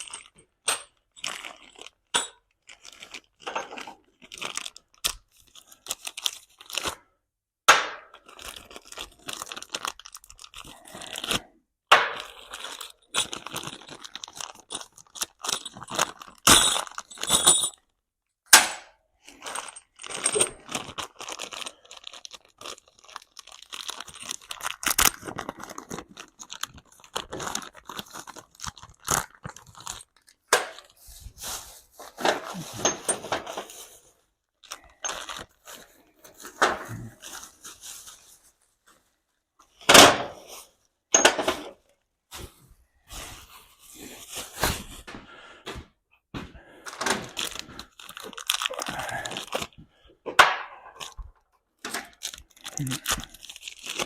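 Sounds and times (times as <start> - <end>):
hardware clattering and rustling: 0.0 - 4.3, 11.9 - 17.9, 18.6 - 21.0, 31.9 - 34.0, 34.9 - 37.6, 41.1 - 41.9, 46.4 - 47.8.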